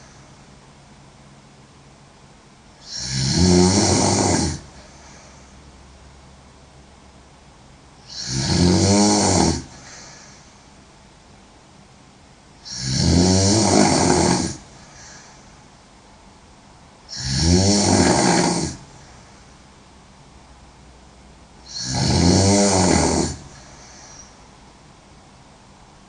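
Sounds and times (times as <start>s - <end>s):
woman snoring loudly: 2.8s - 4.8s, 8.0s - 10.2s, 12.6s - 14.8s, 17.1s - 18.9s, 21.6s - 24.3s.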